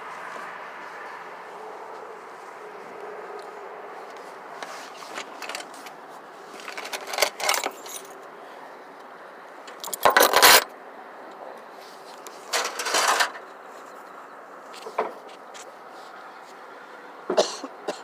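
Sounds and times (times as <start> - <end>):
jangling clattering rattles: 6.6 - 8.2, 9.7 - 10.6.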